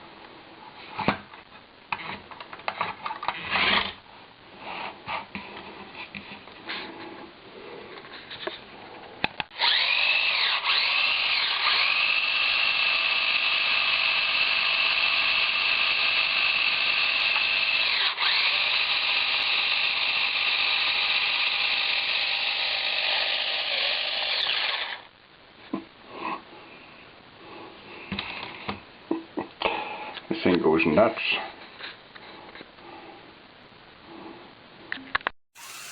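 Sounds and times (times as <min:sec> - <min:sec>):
small electric motors whining: 0:09.5 - 0:25.1, 0:35.6 - 0:35.9.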